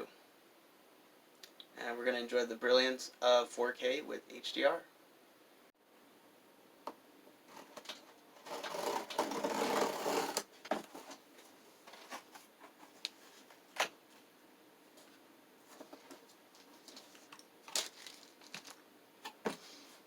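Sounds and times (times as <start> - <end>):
cardboard rustling and scraping: 7.5 - 13.7, 14.9 - 20.0.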